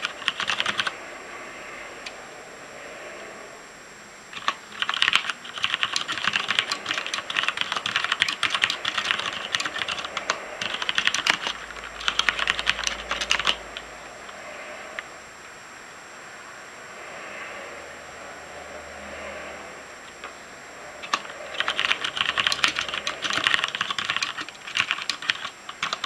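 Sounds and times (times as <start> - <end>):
mechanical keyboard typing: 0.0 - 0.9, 4.4 - 14.4, 21.0 - 26.0.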